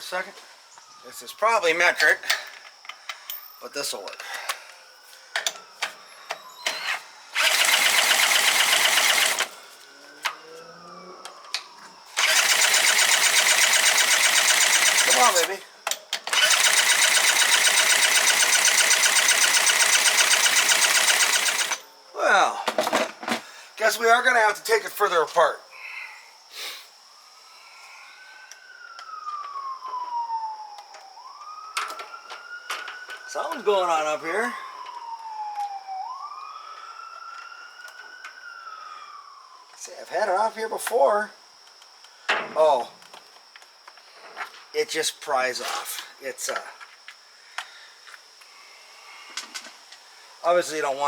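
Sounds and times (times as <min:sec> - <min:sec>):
siren wailing: 0:00.0 - 0:02.2, 0:04.5 - 0:22.6, 0:27.2 - 0:40.6
outboard motor cranking: 0:07.4 - 0:09.5, 0:16.3 - 0:21.8.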